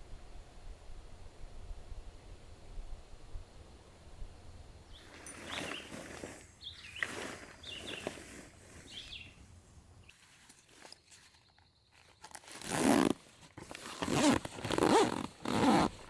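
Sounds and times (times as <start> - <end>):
outdoor noise hiss: 0.0 - 16.0
bird chirping: 4.8 - 9.4.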